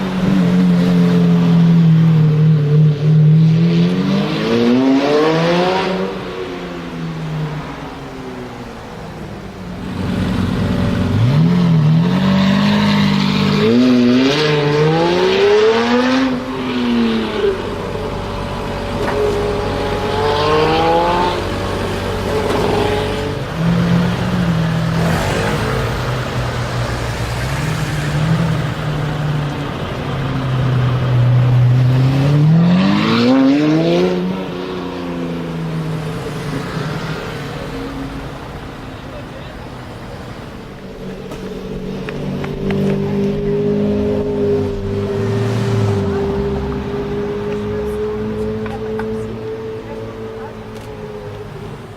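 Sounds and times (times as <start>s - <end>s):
car engine revving hard: 0.0s - 6.4s, 9.9s - 29.2s, 31.0s - 35.5s.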